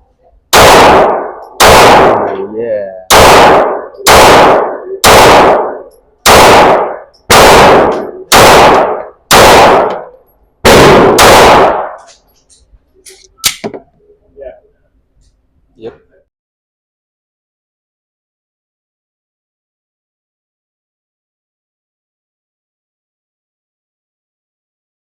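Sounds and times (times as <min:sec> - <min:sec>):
pistol shots: 0:00.5 - 0:02.4, 0:03.1 - 0:12.1.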